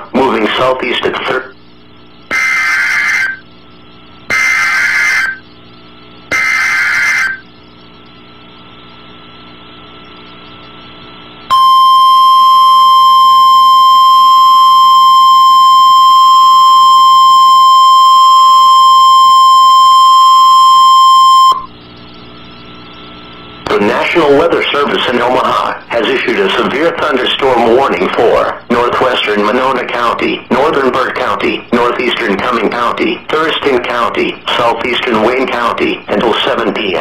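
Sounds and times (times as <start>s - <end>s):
radio hiss: 0.0s - 11.5s, 21.3s - 37.0s
steady warning alarm tone: 1.5s - 35.8s
screechy digital code bursts: 2.2s - 9.0s.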